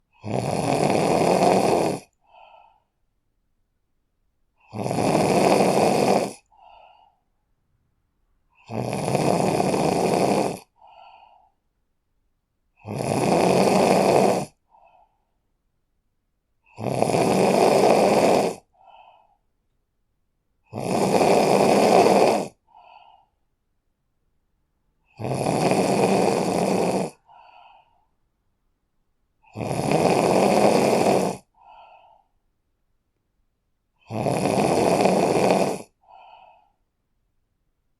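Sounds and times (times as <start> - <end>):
person snoring: 0.1 - 2.9, 4.6 - 7.2, 8.5 - 11.6, 12.8 - 15.3, 16.6 - 19.4, 20.6 - 23.3, 25.0 - 28.1, 29.4 - 32.3, 33.9 - 36.8.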